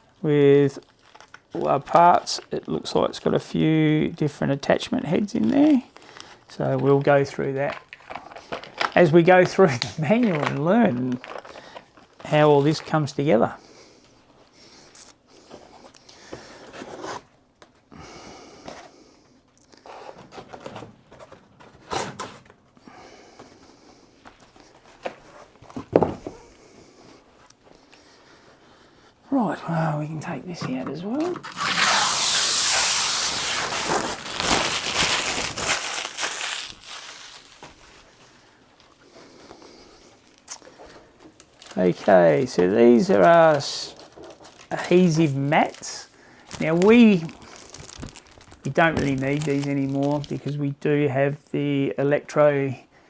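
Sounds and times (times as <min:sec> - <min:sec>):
packaging rustling: 0:00.6 - 0:03.6, 0:04.5 - 0:13.2, 0:30.6 - 0:50.6.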